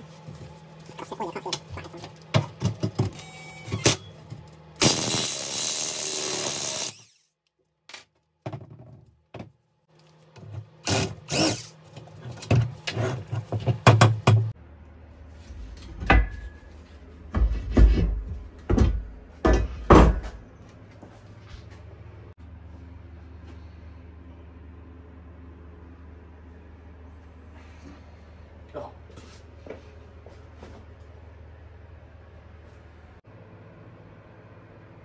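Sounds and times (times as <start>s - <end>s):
power tool burst: 4.8s - 7.3s, 10.8s - 11.7s.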